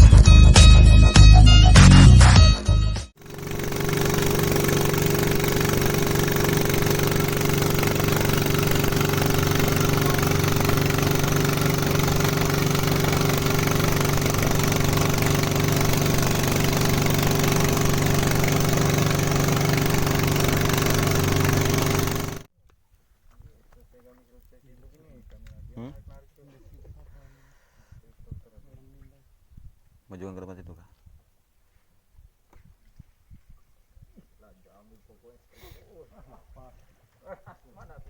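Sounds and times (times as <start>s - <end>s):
boat engine idling: 3.2s - 22.5s.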